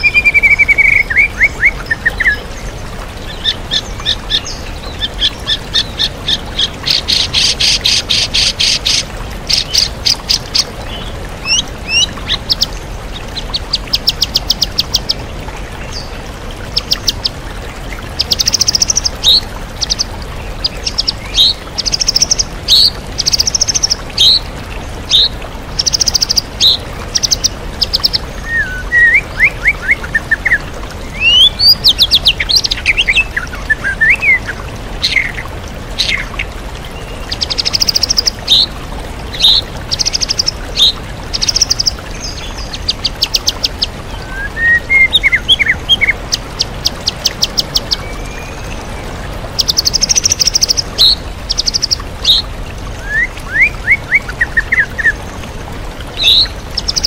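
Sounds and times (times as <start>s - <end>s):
songbird singing trills: 0.0s - 2.4s, 39.3s - 48.8s, 56.2s - 57.0s
waterfall rushing: 0.0s - 57.0s.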